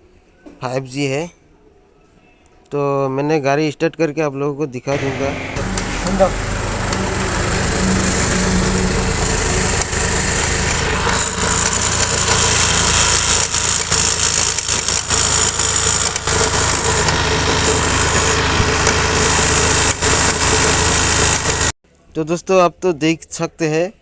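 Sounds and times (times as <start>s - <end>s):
scooter engine running: 4.9s - 21.8s.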